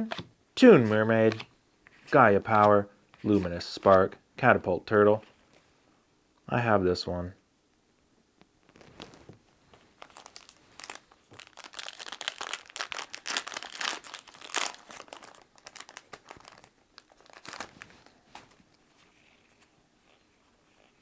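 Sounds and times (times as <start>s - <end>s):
foil wrapper crinkling and tearing: 10.0s - 18.2s.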